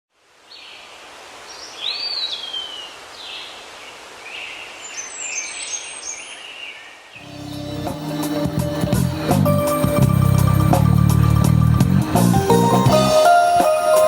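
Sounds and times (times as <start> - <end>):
rainforest background hiss: 0.1 - 14.0
bird calls: 0.6 - 8.3.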